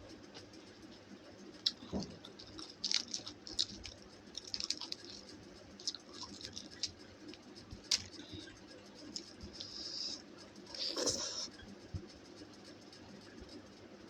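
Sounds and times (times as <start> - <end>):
wet chewing sounds: 1.6 - 11.5.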